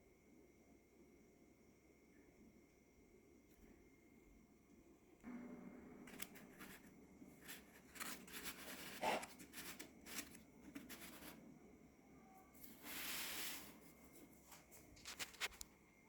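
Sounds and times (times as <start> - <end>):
soft rustling: 12.6 - 15.6.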